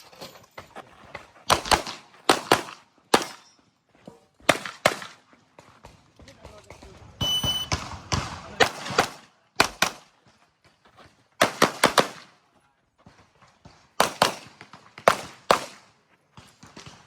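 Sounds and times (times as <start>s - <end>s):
handgun shots: 1.5s - 3.5s.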